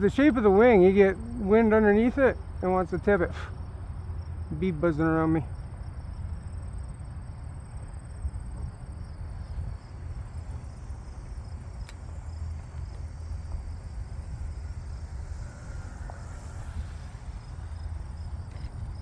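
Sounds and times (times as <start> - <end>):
high insect trill: 0.0 - 19.0
wind buffeting microphone: 5.4 - 19.0.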